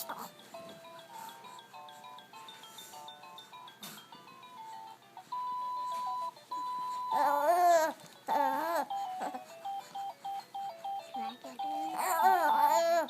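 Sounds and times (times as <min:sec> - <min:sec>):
long steady beep: 0:05.3 - 0:07.2, 0:09.0 - 0:11.9.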